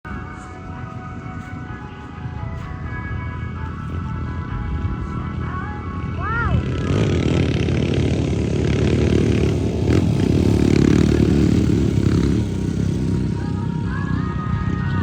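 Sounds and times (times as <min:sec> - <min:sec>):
light music melody: 0:00.1 - 0:07.8
atv engine rumble: 0:00.1 - 0:15.0.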